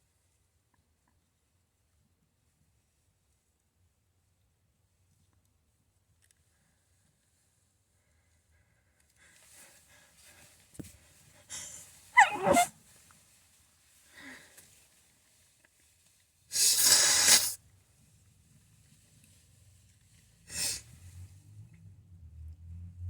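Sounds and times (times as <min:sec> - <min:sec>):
person blowing nose: 0:11.5 - 0:12.7, 0:16.5 - 0:17.6, 0:20.5 - 0:20.8
person sneezing: 0:11.5 - 0:12.7, 0:16.6 - 0:17.6.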